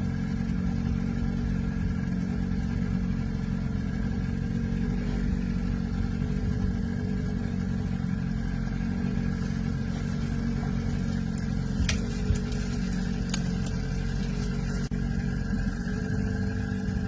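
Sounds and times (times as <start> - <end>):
boat engine droning: 0.0 - 17.0.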